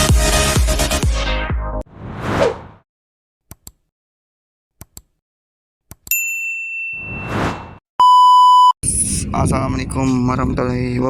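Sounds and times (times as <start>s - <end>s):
whoosh: 1.9s - 2.8s
electronic beep: 8.0s - 8.8s.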